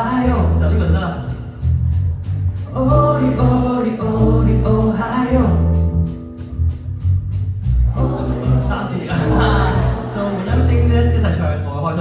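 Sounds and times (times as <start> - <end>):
person singing: 0.0 - 0.6, 2.7 - 5.9, 8.0 - 10.8
bass: 0.0 - 12.0
guitar: 0.0 - 12.0.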